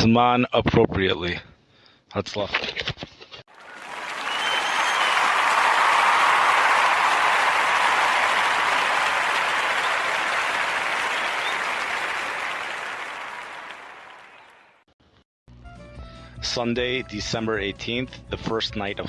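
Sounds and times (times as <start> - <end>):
crowd applauding: 3.5 - 14.8.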